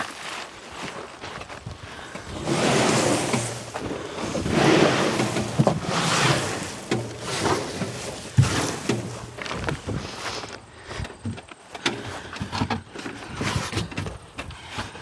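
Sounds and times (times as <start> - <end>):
mulch rushing and scraping: 1.9 - 10.6.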